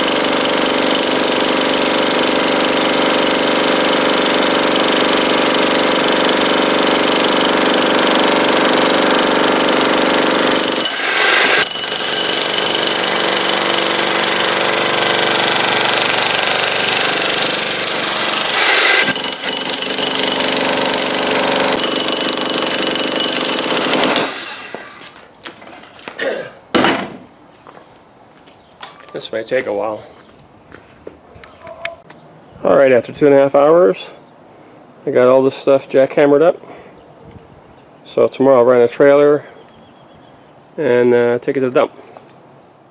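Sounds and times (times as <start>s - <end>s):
jackhammer breaking concrete: 0.0s - 25.1s.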